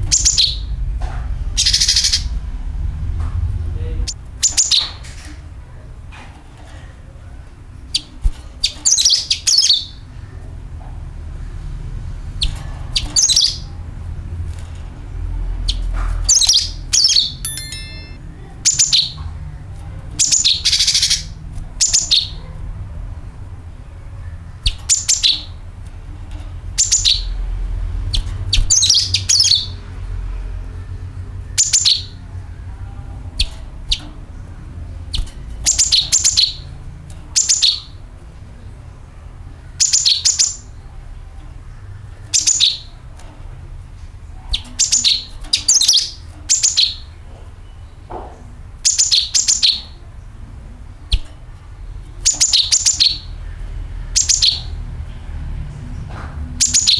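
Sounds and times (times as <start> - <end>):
songbird chirping: 16.3 - 19.1.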